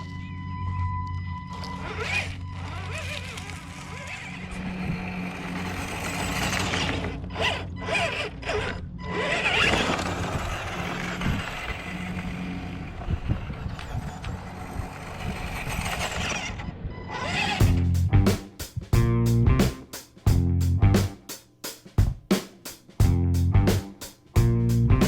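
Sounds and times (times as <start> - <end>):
electric motor whirring: 1.0 - 18.1
gear chatter: 1.5 - 17.9.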